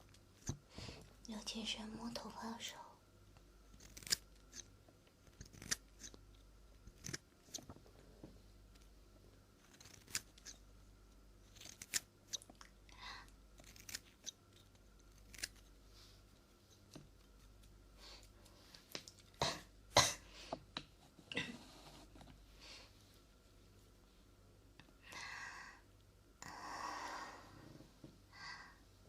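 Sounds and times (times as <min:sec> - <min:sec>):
faint low hum: 0:00.0 - 0:29.0
scissors snipping: 0:03.7 - 0:04.7, 0:05.3 - 0:06.2, 0:09.6 - 0:10.6, 0:11.5 - 0:12.6.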